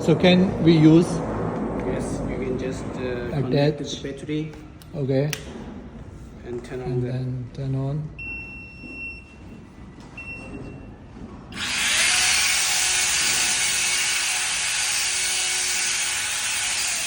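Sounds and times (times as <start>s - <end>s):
electric motor whirring: 11.5s - 17.0s.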